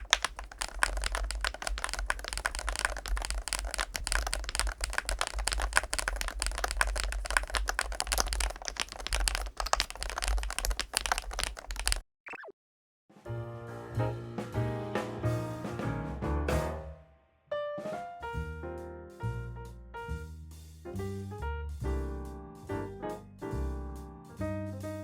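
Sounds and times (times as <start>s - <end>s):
fast keyboard typing: 0.0s - 12.0s.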